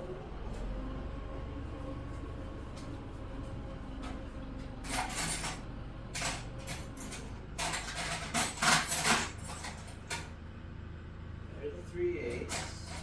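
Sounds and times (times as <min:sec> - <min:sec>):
metal wrenches clinking: 0:06.4 - 0:10.3, 0:12.4 - 0:13.0.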